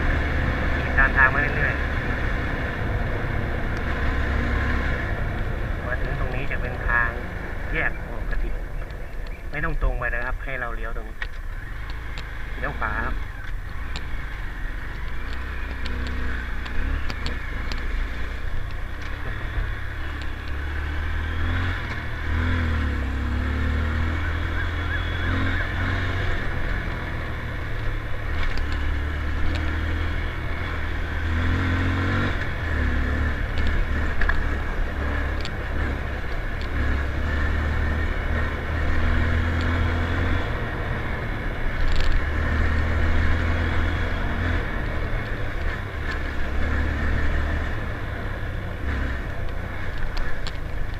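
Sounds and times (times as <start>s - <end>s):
motorcycle engine revving: 0.0s - 50.9s
sharp clicks: 11.2s - 12.3s, 13.4s - 17.9s.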